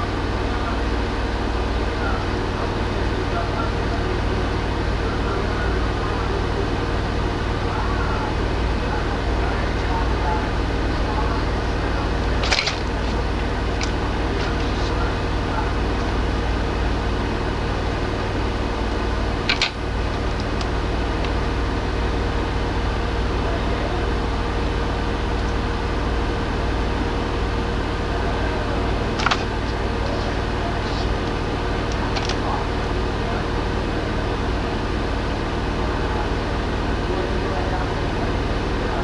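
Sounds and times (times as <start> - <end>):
machine hum and hiss: 0.0 - 39.0
sharp clicks: 12.4 - 13.2, 19.5 - 21.4, 29.2 - 29.5, 31.9 - 32.4.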